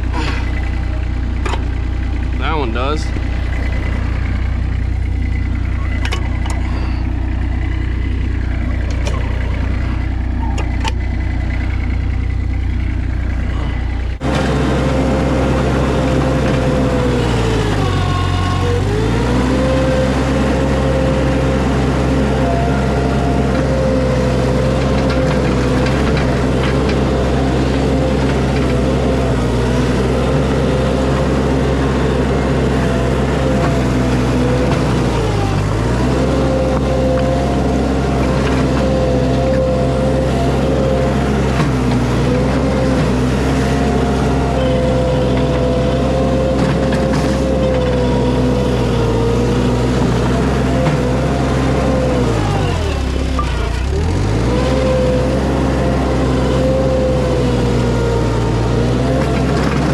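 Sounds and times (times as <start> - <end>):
skid steer engine running: 0.0 - 59.9.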